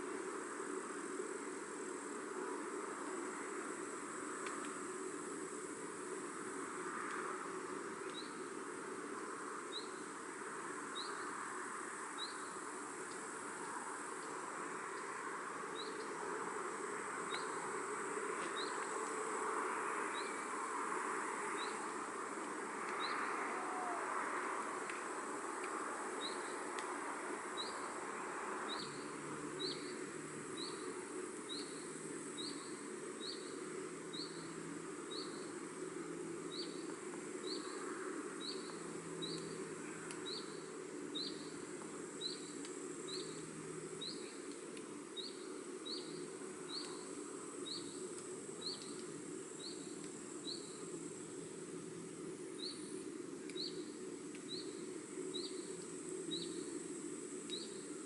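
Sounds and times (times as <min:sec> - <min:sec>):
insect hiss: 0:00.0 - 0:58.0.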